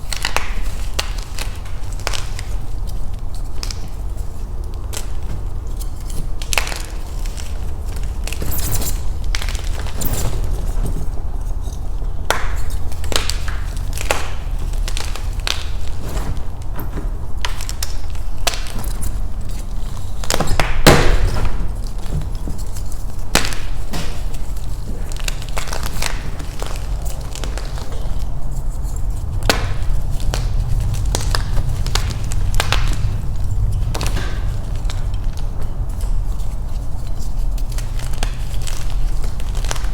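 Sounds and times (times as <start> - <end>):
chalk blocks crunching and cracking: 0.0 - 39.9
low hum: 24.4 - 39.9.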